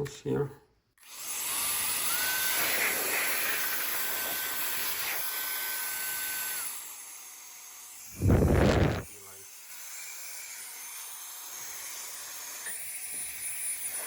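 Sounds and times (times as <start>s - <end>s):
electric air duster fan whining: 8.1s - 9.1s.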